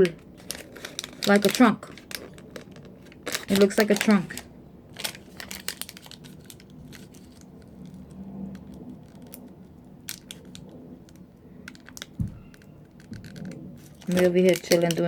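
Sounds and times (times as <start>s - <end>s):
packaging clicks and crinkling: 0.0s - 15.0s.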